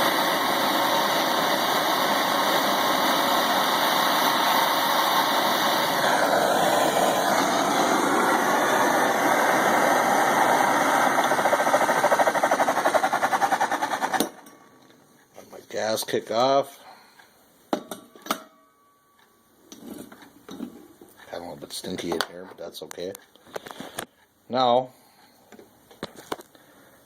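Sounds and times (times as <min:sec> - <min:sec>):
gas torch flame hissing: 0:00.0 - 0:14.4.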